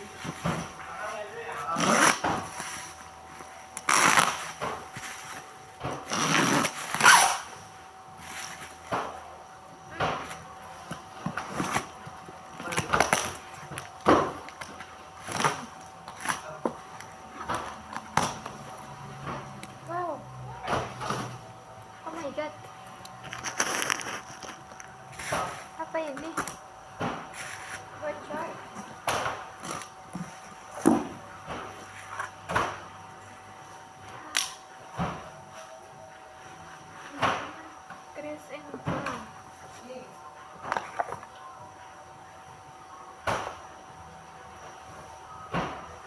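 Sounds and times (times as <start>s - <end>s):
packaging rustling: 23.1s - 26.6s.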